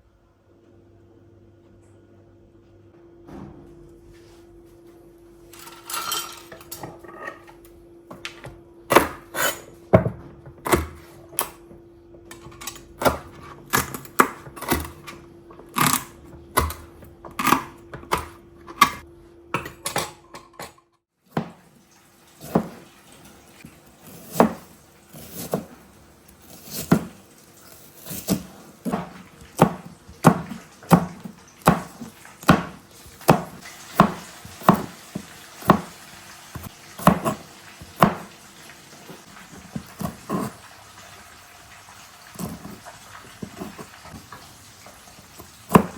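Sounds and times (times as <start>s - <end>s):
dishes and pans clinking: 5.5s - 8.4s, 12.3s - 15.2s, 19.6s - 21.6s.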